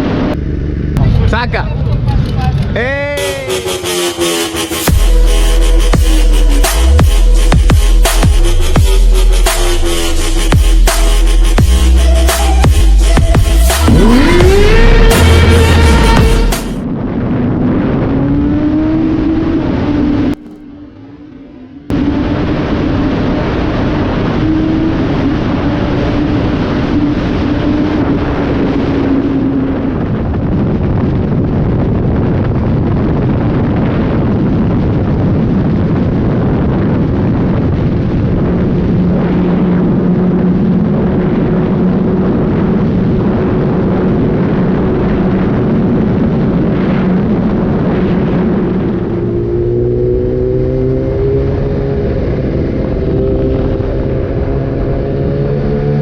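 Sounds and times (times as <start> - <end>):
wind rush on microphone: 0.0 - 3.9, 11.3 - 56.0
motorcycle engine running: 0.0 - 16.8, 20.4 - 21.6.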